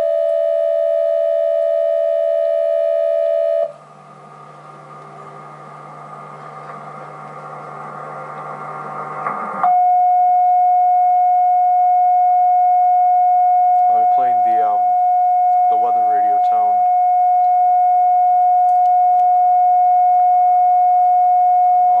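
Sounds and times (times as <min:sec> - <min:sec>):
droning sound: 0:00.0 - 0:22.0
loud steady alert tone: 0:09.6 - 0:22.0
two-tone alert signal: 0:09.6 - 0:22.0.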